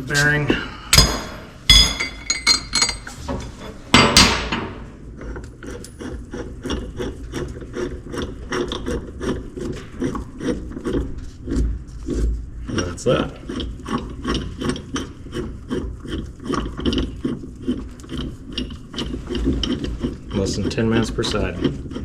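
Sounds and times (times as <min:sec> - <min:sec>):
metal clanks: 0:00.9 - 0:04.9.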